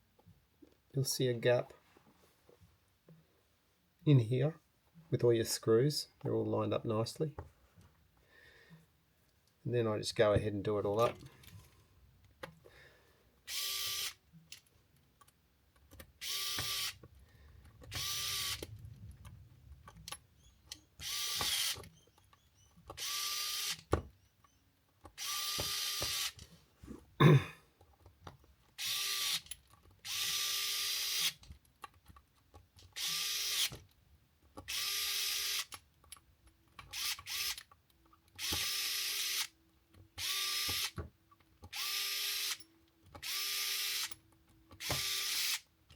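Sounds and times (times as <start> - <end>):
cordless drill whirring: 13.5 - 14.2, 16.2 - 17.0, 17.9 - 18.7, 21.0 - 22.0, 23.0 - 23.9, 25.2 - 26.4, 28.8 - 29.4, 30.0 - 31.4, 33.0 - 33.8, 34.7 - 35.7, 36.9 - 37.6, 38.4 - 39.5, 40.2 - 41.0, 41.7 - 42.6, 43.2 - 44.2, 44.8 - 45.6.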